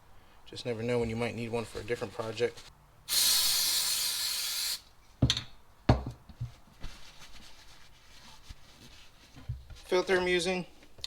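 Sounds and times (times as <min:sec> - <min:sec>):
aerosol spray can hissing: 0:03.1 - 0:04.8.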